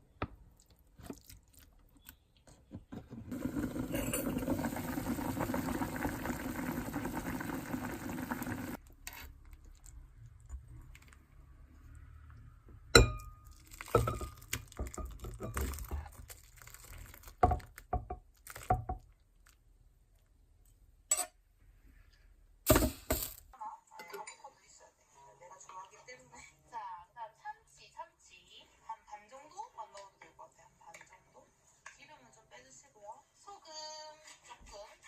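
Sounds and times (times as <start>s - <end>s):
running tap water: 3.3s - 8.8s
dishes and utensils clinking: 3.6s - 4.6s.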